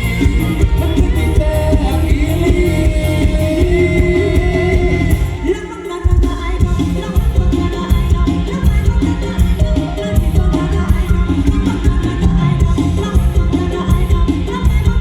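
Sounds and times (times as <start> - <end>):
person singing long notes: 0.0 - 6.0
live band music: 0.0 - 15.0.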